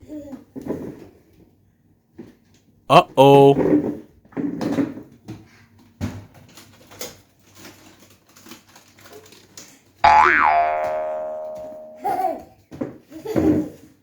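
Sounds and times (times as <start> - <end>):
ringing tone sliding upward: 10.0 - 12.1.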